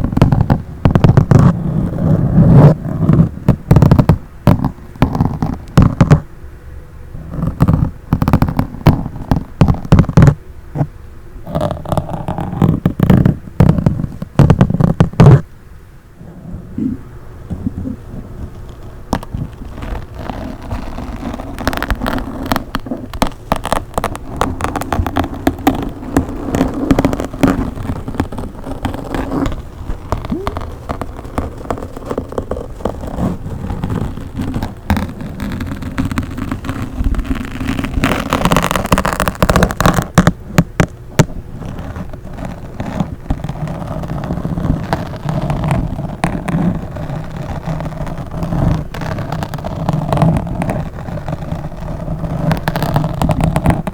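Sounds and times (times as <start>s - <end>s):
fingers scratching on microphone: 0.0s - 6.3s, 7.2s - 15.5s, 16.2s - 53.9s
low rumble: 16.0s - 19.8s.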